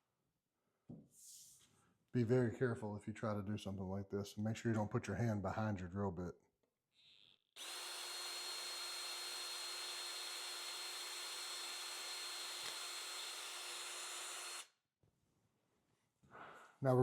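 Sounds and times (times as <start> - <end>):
power drill whining: 7.0 - 14.7.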